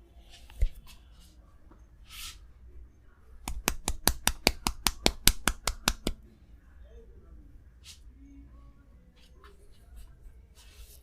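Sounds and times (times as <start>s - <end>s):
hands slapping in massage: 3.4s - 6.2s.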